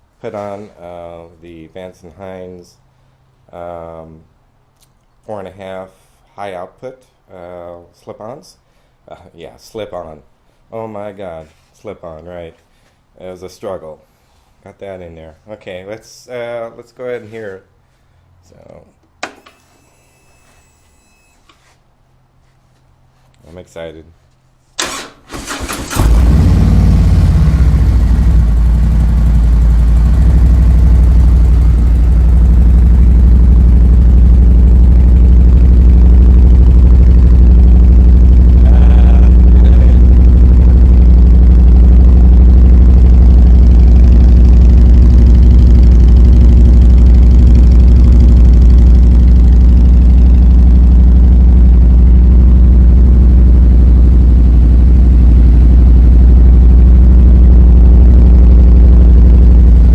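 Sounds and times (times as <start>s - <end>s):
motorcycle engine idling: 26.1s - 59.9s.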